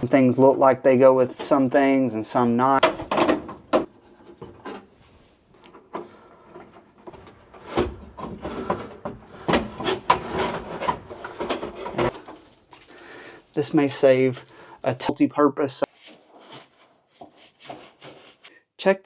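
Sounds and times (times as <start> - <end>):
hard parts clicking and knocking: 2.8 - 4.9, 5.6 - 12.9.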